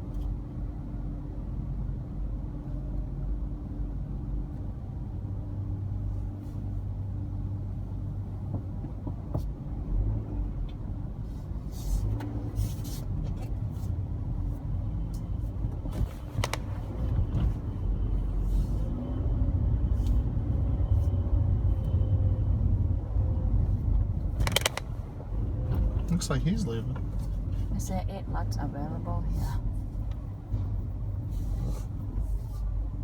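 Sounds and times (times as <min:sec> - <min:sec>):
car engine and road noise: 0:00.0 - 0:33.0
clicks and knocks: 0:24.4 - 0:24.9.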